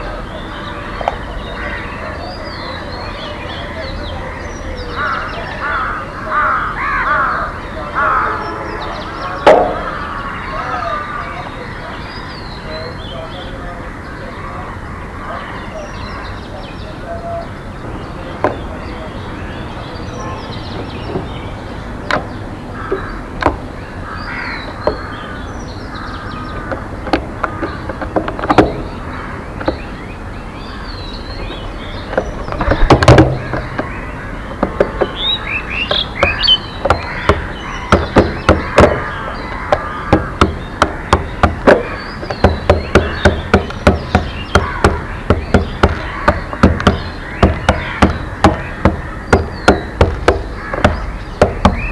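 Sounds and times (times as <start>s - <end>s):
birds chirping and calling: 0.0s - 51.9s
sharp knocks: 9.3s - 10.4s, 18.4s - 18.8s, 22.0s - 23.7s, 24.7s - 25.3s, 26.2s - 30.0s, 31.2s - 51.9s.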